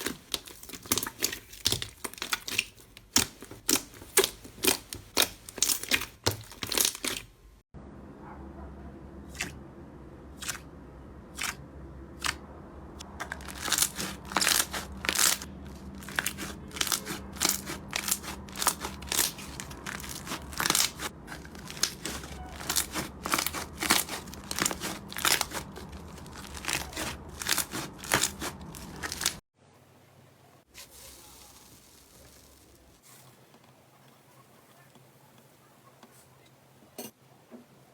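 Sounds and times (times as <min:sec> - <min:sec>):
crunchy slime crackling: 0:00.0 - 0:07.4, 0:13.0 - 0:29.4, 0:30.8 - 0:33.2.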